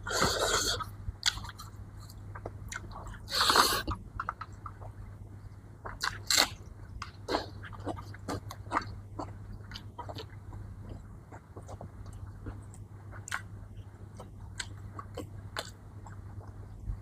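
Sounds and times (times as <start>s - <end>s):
person chewing food: 0.0s - 5.2s, 5.8s - 17.0s
steady low hum: 0.0s - 17.0s.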